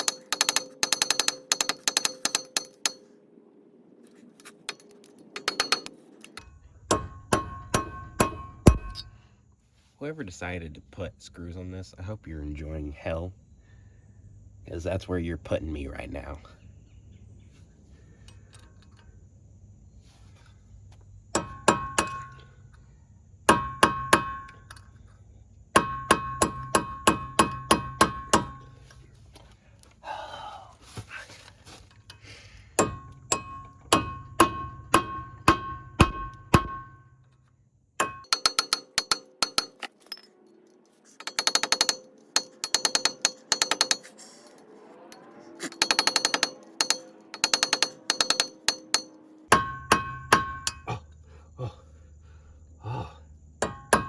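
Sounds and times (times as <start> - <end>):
hammer striking metal: 0.0 - 3.1, 4.7 - 9.2, 21.4 - 22.4, 23.5 - 24.8, 25.8 - 28.7, 32.8 - 37.3, 38.0 - 40.3, 41.2 - 44.2, 45.1 - 51.0, 53.6 - 54.0.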